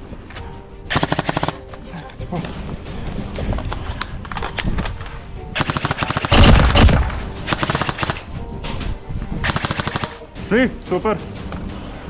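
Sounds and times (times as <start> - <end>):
airsoft guns firing in bursts: 5.6 - 8.3.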